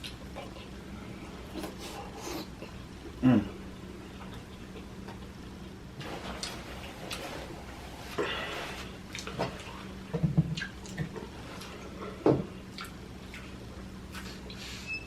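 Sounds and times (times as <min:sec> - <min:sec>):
wet chewing: 0:09.1 - 0:09.8, 0:12.7 - 0:14.6.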